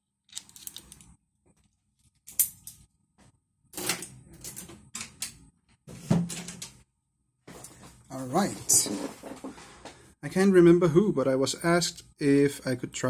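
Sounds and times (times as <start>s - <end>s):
metal padlock and tools rattling: 0.3s - 1.1s, 2.3s - 2.8s.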